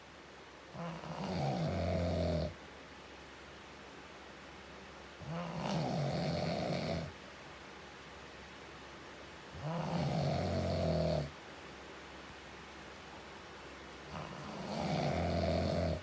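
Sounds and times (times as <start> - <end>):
man snoring: 0.8 - 2.5, 5.3 - 7.1, 9.6 - 11.3, 14.1 - 16.0.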